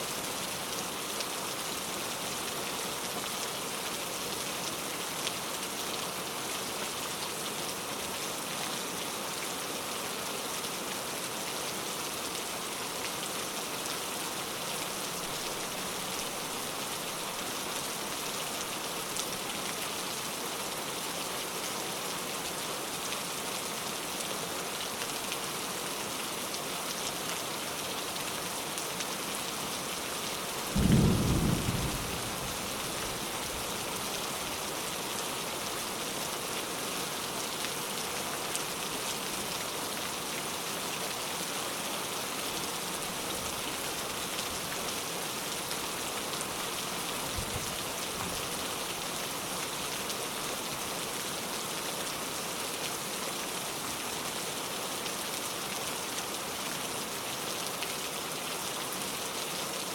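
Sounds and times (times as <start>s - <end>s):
rain hiss: 0.0s - 59.9s
low rumble of thunder: 30.7s - 33.3s.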